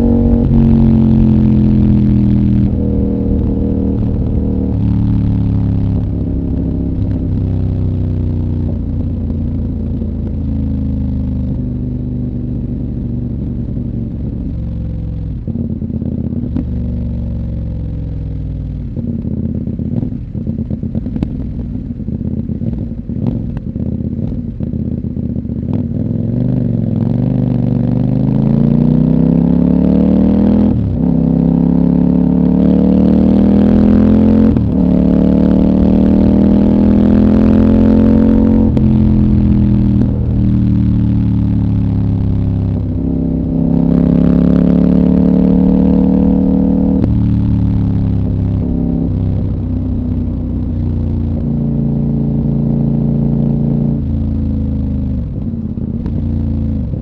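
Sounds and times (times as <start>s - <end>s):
motorcycle engine revving: 0.0s - 57.0s
exhaust pops and crackles: 18.5s - 26.0s, 55.2s - 57.0s.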